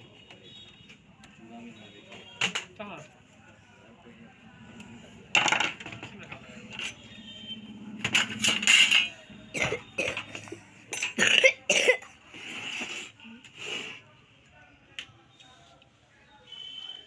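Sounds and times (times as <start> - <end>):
indistinct voices talking: 3.5 - 11.9
clinks and knocks: 8.0 - 9.2.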